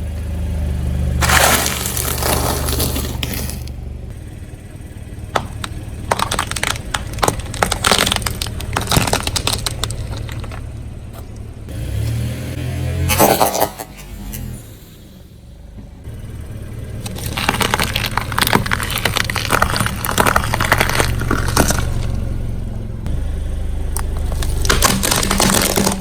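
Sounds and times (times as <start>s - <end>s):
low engine hum: 0.0s - 26.0s
tyre crunching brittle objects: 1.2s - 3.8s, 5.3s - 11.5s, 17.0s - 22.3s, 24.0s - 26.0s.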